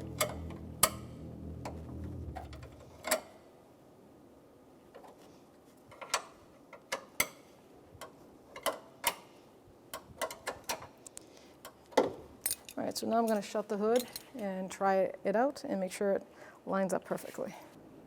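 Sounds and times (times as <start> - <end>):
wrench clicking on metal bolts: 5.9 - 7.4, 8.0 - 9.3, 9.9 - 10.9, 12.4 - 13.4.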